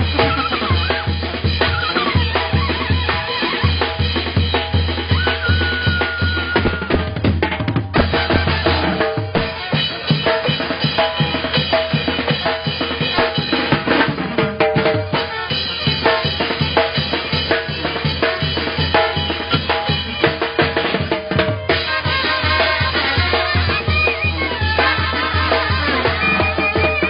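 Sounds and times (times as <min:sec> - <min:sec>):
bass drum and snare beat: 0:00.0 - 0:27.0
held horn notes: 0:08.0 - 0:10.5, 0:21.7 - 0:27.0.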